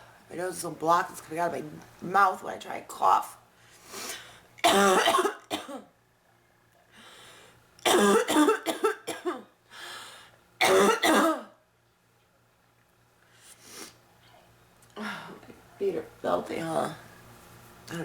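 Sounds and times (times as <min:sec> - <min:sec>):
breaths: 0:03.6 - 0:04.5, 0:06.9 - 0:07.6, 0:09.7 - 0:10.4
woman coughing: 0:04.6 - 0:05.9, 0:07.9 - 0:09.5, 0:10.6 - 0:11.6.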